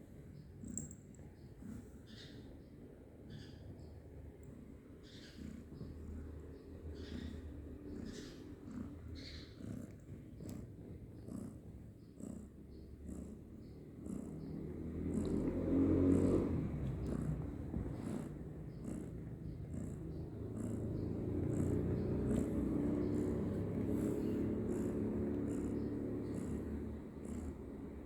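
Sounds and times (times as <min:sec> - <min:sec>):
kitten purring: 0:00.0 - 0:28.0.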